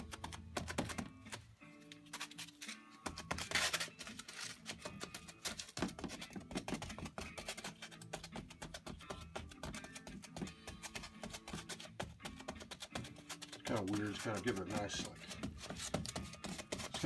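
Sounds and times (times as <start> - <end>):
background music: 0.0 - 17.0
aluminium foil crinkling and tearing: 1.8 - 5.8.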